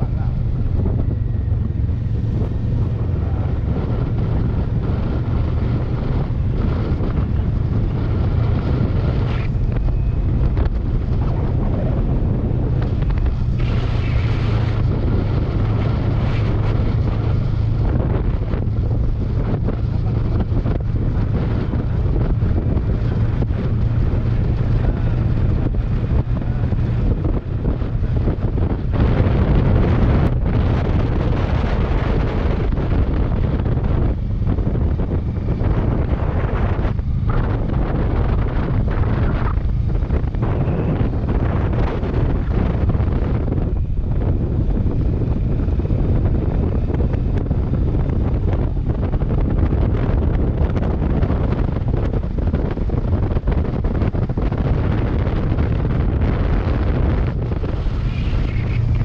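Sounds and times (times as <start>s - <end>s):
motorcycle engine humming: 0.0s - 59.0s
wind buffeting microphone: 0.0s - 59.0s.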